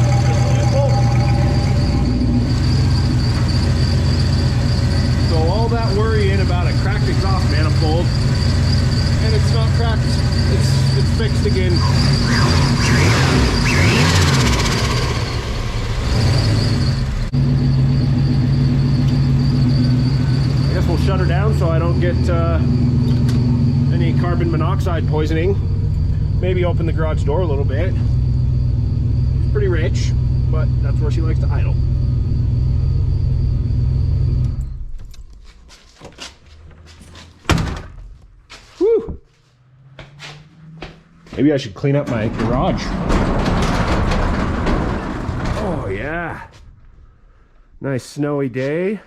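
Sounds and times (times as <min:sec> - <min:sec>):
engine revving: 0:00.0 - 0:34.8, 0:39.7 - 0:41.4
car engine idling: 0:00.0 - 0:35.2.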